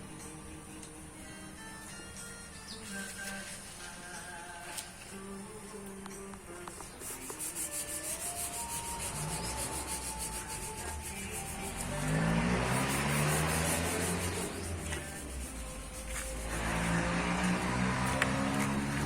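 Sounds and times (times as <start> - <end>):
sandpaper rubbing on car panel: 7.0 - 19.0.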